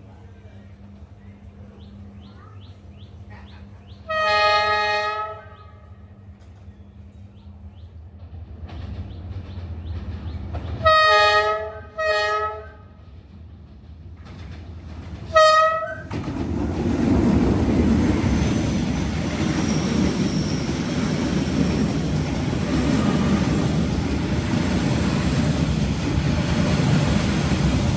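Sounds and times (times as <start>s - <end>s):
approaching train rumble: 0.0s - 27.9s
locomotive air horn blasts: 4.1s - 6.0s, 10.8s - 12.9s, 15.3s - 16.1s.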